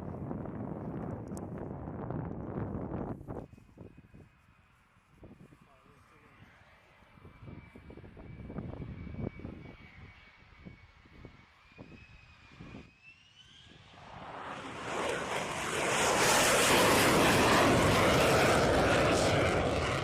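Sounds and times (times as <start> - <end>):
jet engine passing: 6.3 - 20.0.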